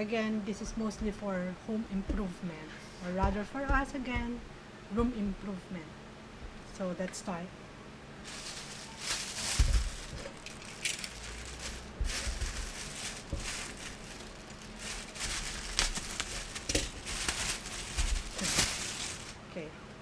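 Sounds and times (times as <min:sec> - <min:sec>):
dull knocks: 0:00.6 - 0:01.3, 0:01.9 - 0:02.4, 0:03.1 - 0:05.4, 0:11.3 - 0:15.5
packaging crinkling and rustling: 0:08.2 - 0:19.5.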